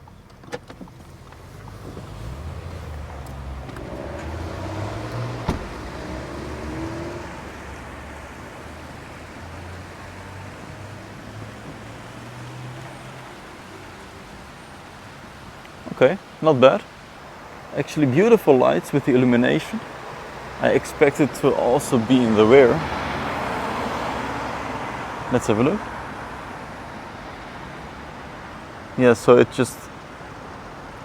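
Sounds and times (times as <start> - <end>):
car engine running: 0.0 - 12.2.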